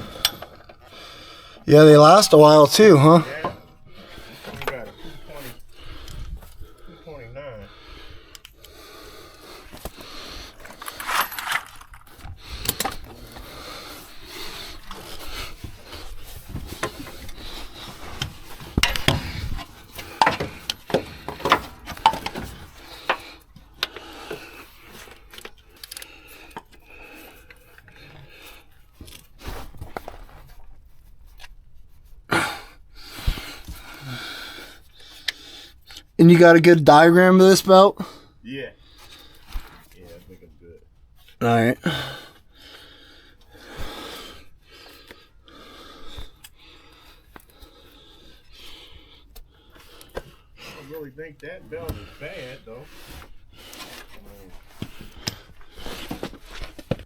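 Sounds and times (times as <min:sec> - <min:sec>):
hand tools clinking and scraping: 0:10.5 - 0:27.9.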